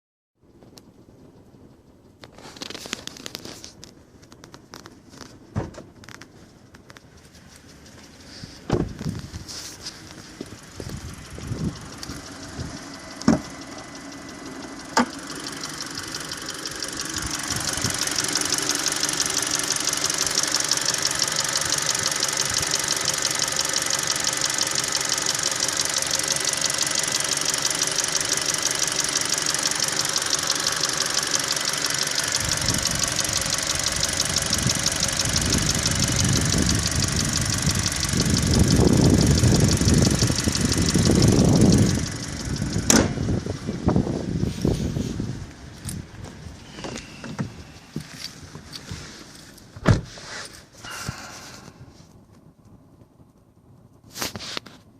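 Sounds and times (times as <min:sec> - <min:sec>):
car engine idling: 0:00.5 - 0:54.9
engine knocking: 0:07.1 - 0:45.1.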